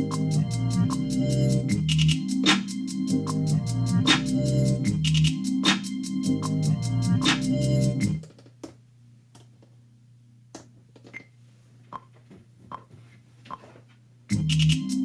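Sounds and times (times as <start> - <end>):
low electrical hum: 6.3 - 15.0.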